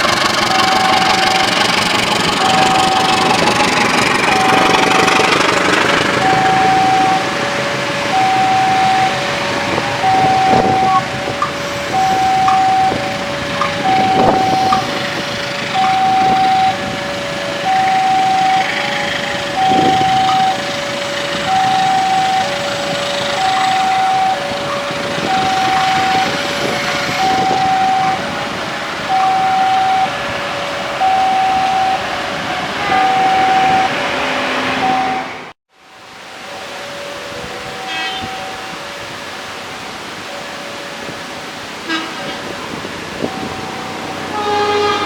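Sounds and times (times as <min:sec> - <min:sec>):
traffic noise: 0:00.0 - 0:45.0
level crossing alarm two-note tone: 0:06.2 - 0:07.3, 0:08.1 - 0:15.0, 0:15.7 - 0:16.9, 0:17.6 - 0:20.7, 0:25.2 - 0:26.4, 0:27.2 - 0:28.2, 0:29.1 - 0:30.2, 0:34.8 - 0:35.3.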